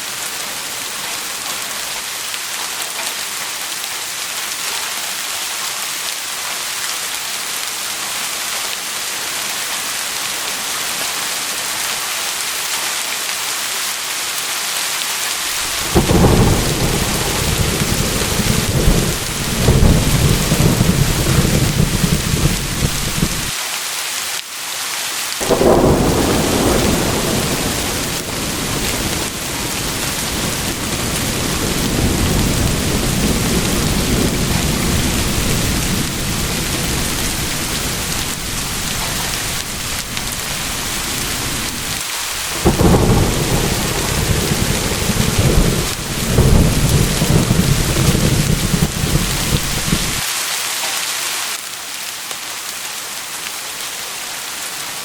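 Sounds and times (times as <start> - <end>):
steady rain hissing: 0.0 - 55.0
rolling thunder: 15.5 - 23.5, 25.4 - 50.2.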